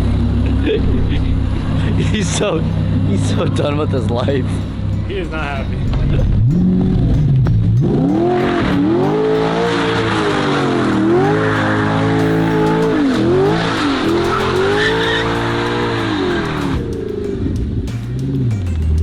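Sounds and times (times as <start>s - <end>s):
car engine revving: 0.0s - 19.0s
tyres squealing: 8.2s - 16.8s.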